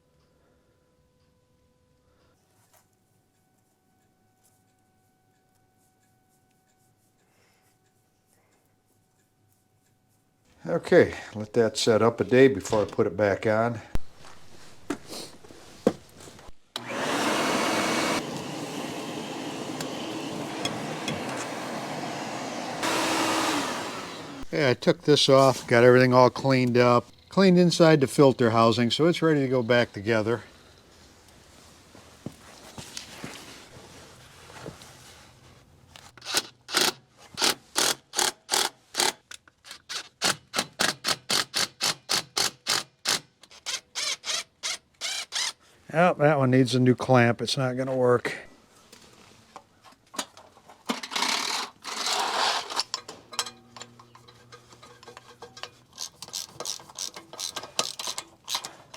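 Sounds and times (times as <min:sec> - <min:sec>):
shop vacuum running: 0:14.7 - 0:24.8
hand tool clicking on hose clamp: 0:51.0 - 0:58.9.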